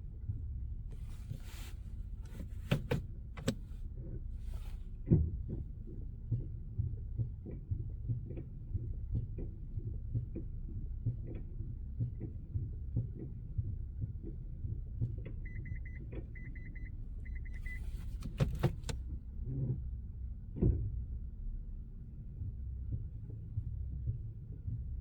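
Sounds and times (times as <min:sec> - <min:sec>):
car engine idling: 0:00.0 - 0:06.0, 0:14.3 - 0:19.1
brake knocking: 0:00.9 - 0:05.7, 0:14.2 - 0:19.1.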